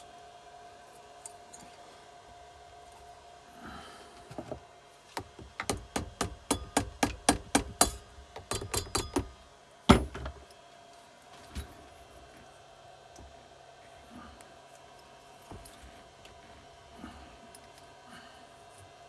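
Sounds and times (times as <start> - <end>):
hand tools tapping on engine: 5.2 - 10.4.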